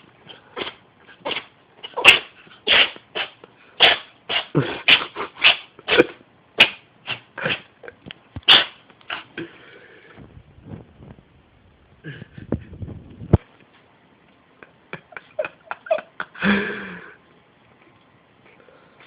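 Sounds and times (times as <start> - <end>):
cat sneezing: 0.6 - 7.8, 8.4 - 9.4.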